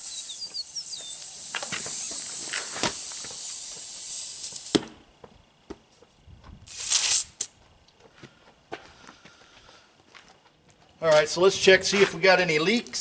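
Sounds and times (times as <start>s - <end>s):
compressed air hissing: 0.0s - 5.0s, 6.6s - 7.5s.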